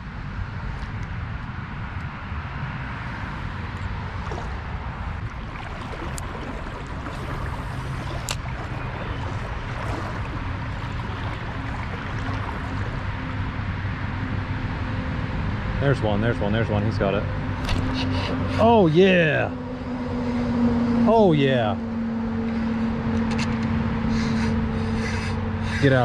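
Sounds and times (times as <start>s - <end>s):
river water running over riffle: 2.8s - 15.2s, 16.8s - 19.4s.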